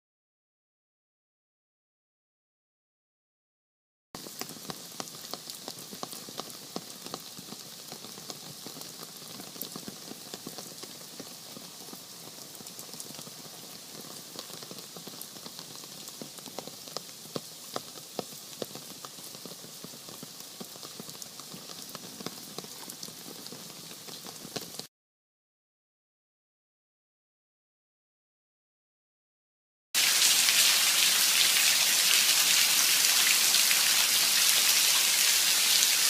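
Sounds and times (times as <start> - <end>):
rain falling steadily: 4.2 - 24.9, 30.0 - 36.0.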